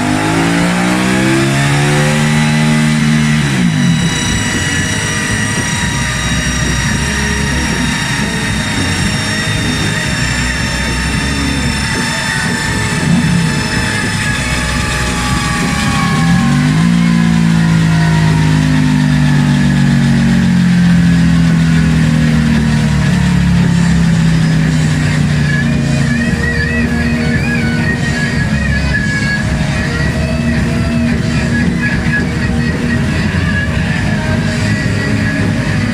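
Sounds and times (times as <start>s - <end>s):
guitar-led music: 0.0s - 35.9s
motorcycle whine falling in pitch: 0.0s - 35.9s.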